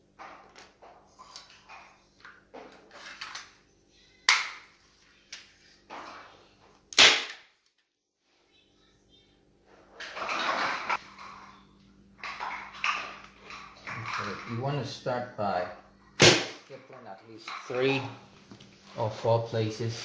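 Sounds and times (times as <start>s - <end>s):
staple gun firing: 7.0s - 7.4s, 16.2s - 16.6s.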